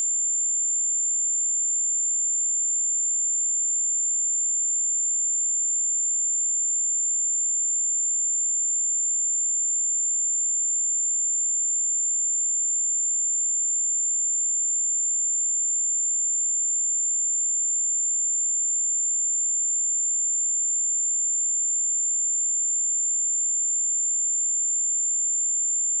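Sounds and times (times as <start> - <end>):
high-pitched sine-wave test tone: 11.0 - 26.0.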